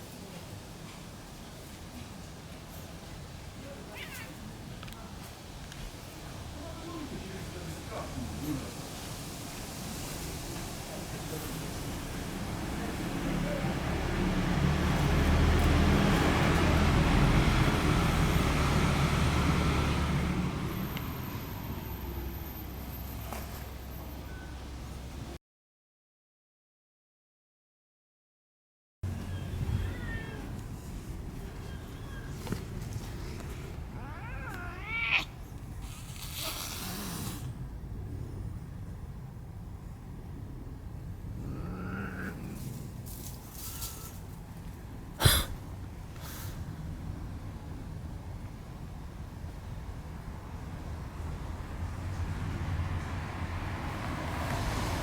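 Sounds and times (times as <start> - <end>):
cat yowling: 3.9 - 4.4, 29.3 - 30.6, 33.8 - 37.5, 41.4 - 42.5
vehicle driving past: 8.8 - 23.3, 51.3 - 55.0.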